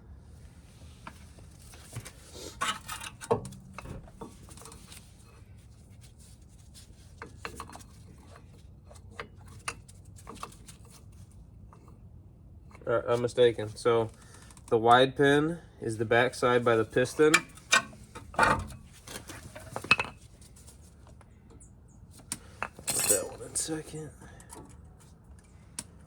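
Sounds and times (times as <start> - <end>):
metal brake pads clicking and scraping: 1.1 - 11.9, 16.4 - 26.0.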